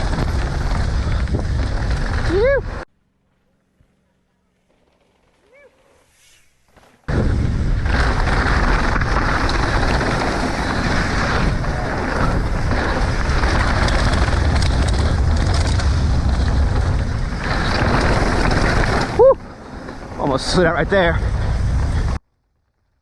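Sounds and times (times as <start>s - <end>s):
bike tyres rumbling over dirt: 0.0s - 2.8s, 6.6s - 23.0s
wind rushing over microphone: 0.0s - 2.8s, 7.1s - 22.2s.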